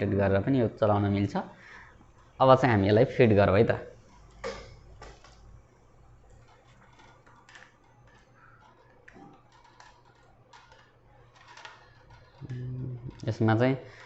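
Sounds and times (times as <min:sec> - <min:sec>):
low room hum: 0:00.0 - 0:14.0
plastic parts clicking and tapping: 0:04.1 - 0:05.5, 0:06.2 - 0:14.0.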